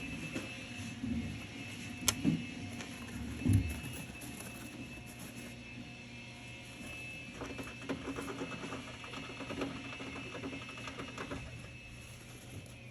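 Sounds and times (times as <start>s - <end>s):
steady background hum: 0.0s - 12.9s
small pet gnawing at cage: 6.8s - 12.9s.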